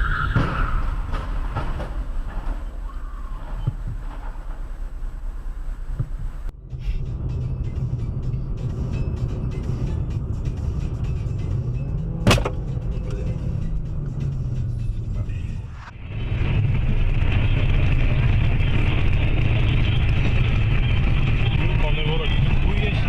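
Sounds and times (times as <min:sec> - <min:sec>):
car engine and road rumble: 0:00.0 - 0:23.0
sharp loud bang: 0:12.3 - 0:12.7.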